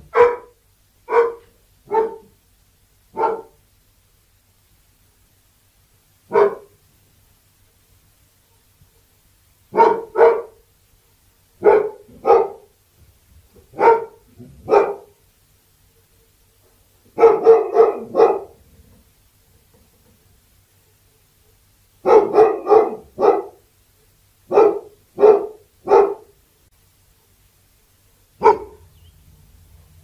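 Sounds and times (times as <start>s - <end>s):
dog barking: 0.0s - 2.4s, 3.1s - 3.6s, 6.3s - 6.8s, 9.7s - 10.6s, 11.6s - 12.7s, 13.7s - 15.2s, 17.2s - 18.6s, 22.0s - 23.7s, 24.5s - 26.4s, 28.4s - 28.9s.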